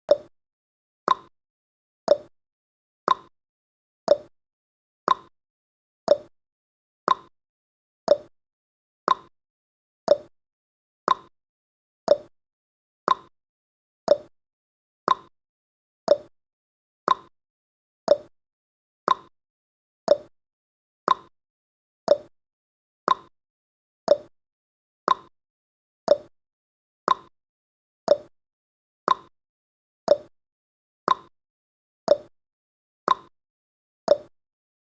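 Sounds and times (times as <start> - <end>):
clock tick-tock: 0.1 - 0.3, 1.1 - 1.3, 2.1 - 2.3, 3.1 - 3.3, 4.1 - 4.3, 5.1 - 5.3, 6.1 - 6.3, 7.1 - 7.3, 8.1 - 8.3, 9.1 - 9.3, 10.1 - 10.3, 11.1 - 11.3, 12.1 - 12.3, 13.1 - 13.3, 14.1 - 14.3, 15.1 - 15.3, 16.1 - 16.3, 17.1 - 17.3, 18.1 - 18.3, 19.1 - 19.3, 20.1 - 20.3, 21.1 - 21.3, 22.1 - 22.3, 23.1 - 23.3, 24.1 - 24.3, 25.1 - 25.3, 26.1 - 26.3, 27.1 - 27.3, 28.1 - 28.3, 29.1 - 29.3, 30.1 - 30.3, 31.1 - 31.3, 32.1 - 32.3, 33.1 - 33.3, 34.1 - 34.3.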